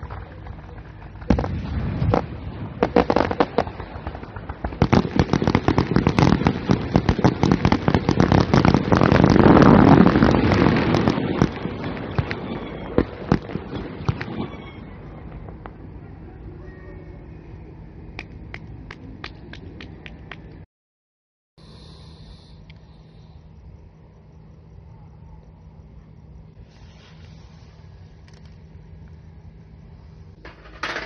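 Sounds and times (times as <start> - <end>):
fireworks cracking and popping: 0.0 - 15.9, 30.3 - 31.0.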